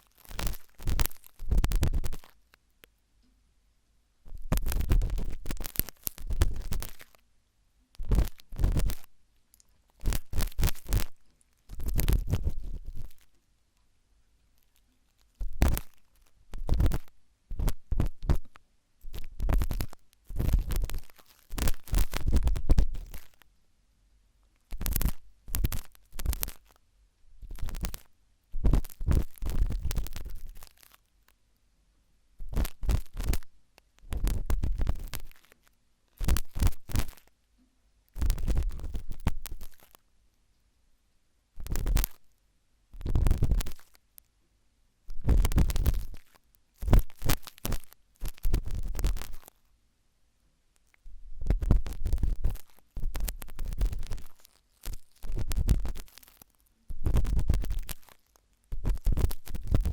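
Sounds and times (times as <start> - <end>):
toothpick scratching: 9.9 - 13.3, 51.5 - 59.9.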